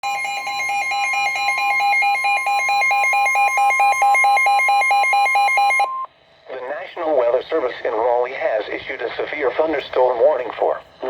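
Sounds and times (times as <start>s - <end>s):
fast two-pitch pulsing beep: 0.0s - 6.1s
steady alarm tone: 0.0s - 7.6s.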